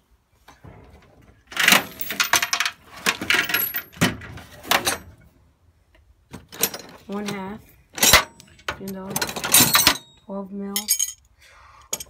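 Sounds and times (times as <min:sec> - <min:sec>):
metal tools clattering: 0:00.6 - 0:05.2, 0:06.4 - 0:11.3.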